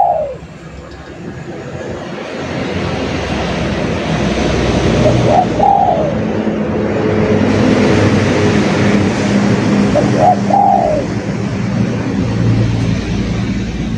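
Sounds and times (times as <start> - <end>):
dove cooing: 0.0 - 1.2, 4.8 - 6.6, 9.8 - 11.3.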